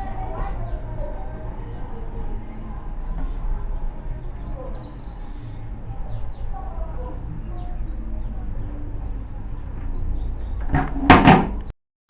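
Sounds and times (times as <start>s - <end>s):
faint bird chirps: 0.0s - 9.3s, 9.9s - 10.7s
steady low rumble: 0.0s - 11.1s.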